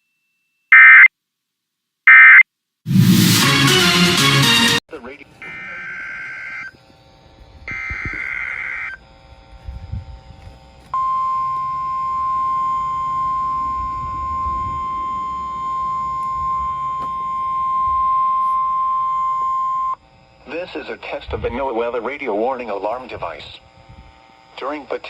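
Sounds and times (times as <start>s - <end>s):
steady alarm beep: 11.0s - 20.0s.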